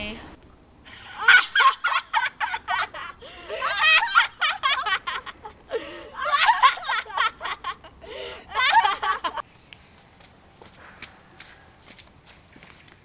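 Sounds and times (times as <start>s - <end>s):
high-pitched laughter: 1.2s - 9.4s.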